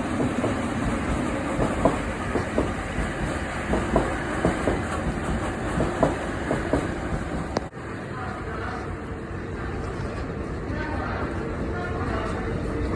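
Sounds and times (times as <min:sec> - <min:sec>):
wheels clacking over rail joints: 0:00.0 - 0:07.7
metro train rolling past: 0:00.0 - 0:12.9.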